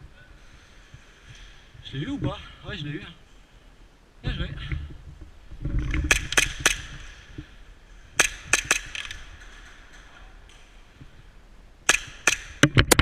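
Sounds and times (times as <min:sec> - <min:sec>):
airsoft gunfire cracks: 0:06.1 - 0:07.2, 0:08.2 - 0:09.3, 0:11.9 - 0:12.7.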